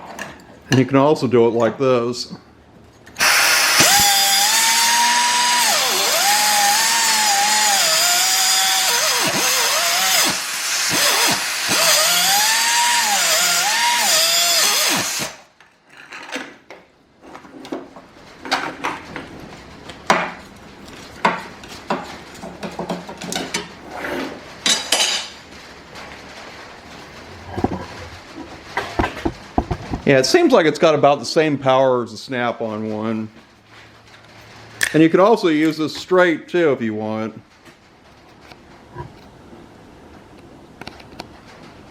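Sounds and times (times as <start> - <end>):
pneumatic cut-off tool whining: 3.2 - 15.5
clicks and knocks of tool handling: 27.3 - 30.1.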